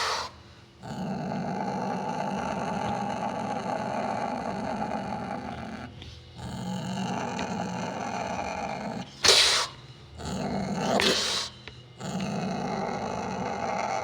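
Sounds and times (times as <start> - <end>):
wild cat growling: 0.0 - 14.0.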